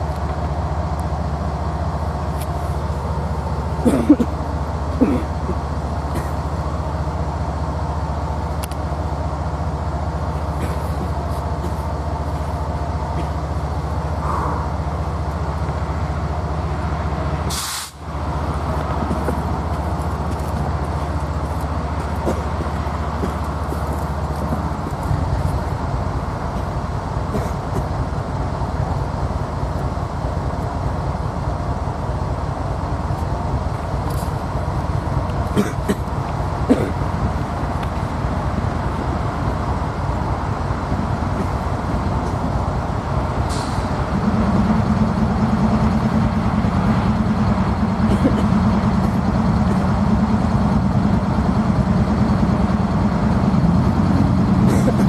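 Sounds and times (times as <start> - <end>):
locomotive engine rumble: 0.0 - 55.0.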